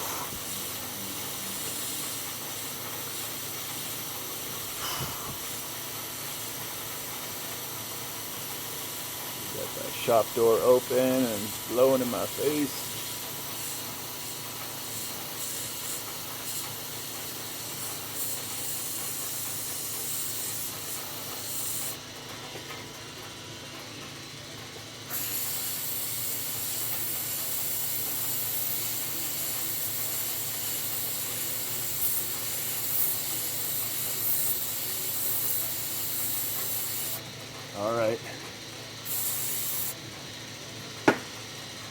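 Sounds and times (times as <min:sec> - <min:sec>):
aerosol can spraying: 0:00.0 - 0:05.6, 0:11.8 - 0:22.0, 0:25.1 - 0:37.2, 0:39.0 - 0:40.0, 0:41.1 - 0:41.3.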